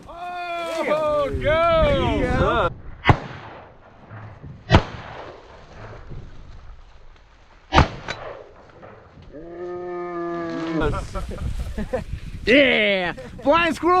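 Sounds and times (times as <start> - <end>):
faint gunshot: 3.0 - 5.4
shotgun blasts: 3.0 - 5.9, 7.7 - 9.1.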